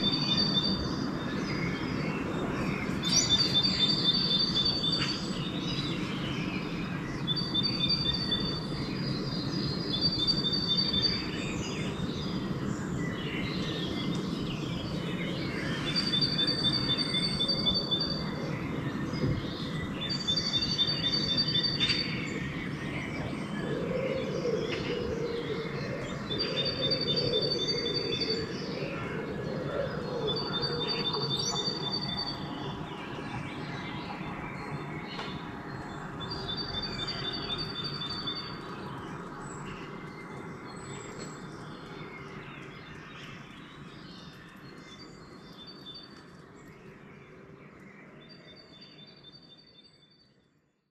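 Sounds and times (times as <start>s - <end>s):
songbirds chirping and singing: 0.0s - 50.8s
pigeon cooing: 23.2s - 30.9s.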